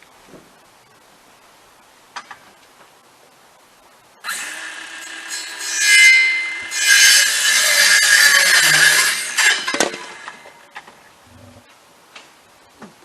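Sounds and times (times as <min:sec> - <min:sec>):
power saw cutting: 0:04.2 - 0:10.6.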